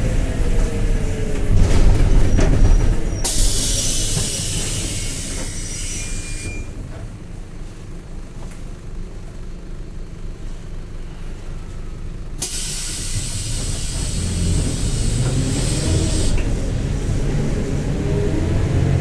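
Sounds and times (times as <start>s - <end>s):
bus diesel engine rumble: 0.0s - 19.0s
compressed air hiss: 3.2s - 6.2s, 12.4s - 16.4s.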